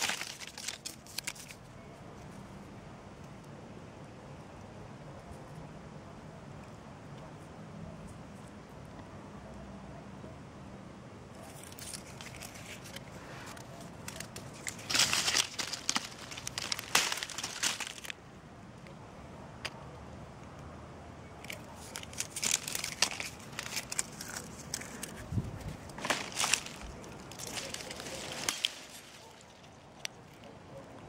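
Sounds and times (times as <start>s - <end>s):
dry leaves and twigs crackling: 0.0s - 1.8s, 11.4s - 18.3s, 21.4s - 30.6s.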